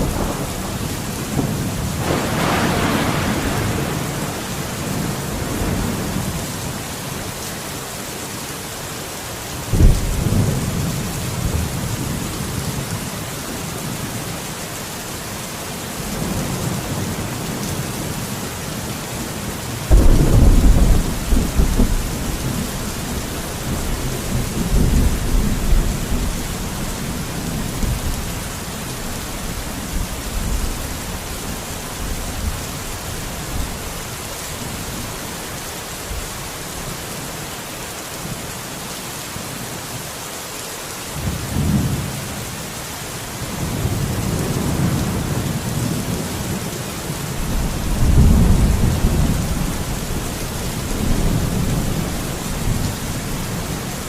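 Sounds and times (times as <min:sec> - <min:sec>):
thunder rumbling: 0:00.0 - 0:06.8, 0:09.7 - 0:12.9, 0:19.9 - 0:33.9, 0:47.4 - 0:54.0
steady rain falling: 0:00.0 - 0:54.0.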